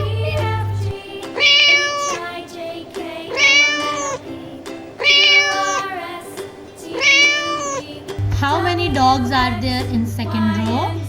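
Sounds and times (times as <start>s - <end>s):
light background music: 0.0s - 11.0s
cat meowing: 1.2s - 2.4s, 3.2s - 4.3s, 5.0s - 6.0s, 6.9s - 8.0s.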